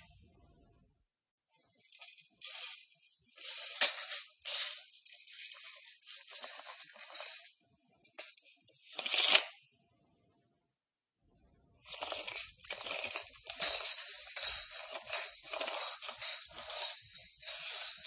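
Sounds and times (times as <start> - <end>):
metal tape measure rasping: 2.0 - 7.5, 8.9 - 9.6, 11.9 - 18.0.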